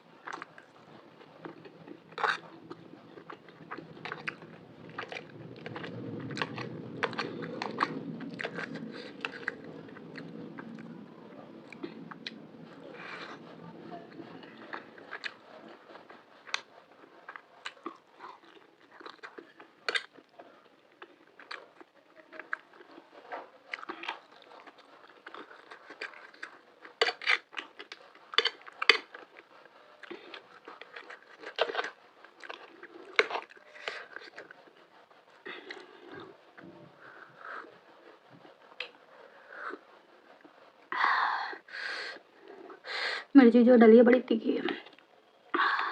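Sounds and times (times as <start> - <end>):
wet chewing with crunchy bites: 0.0 - 41.0.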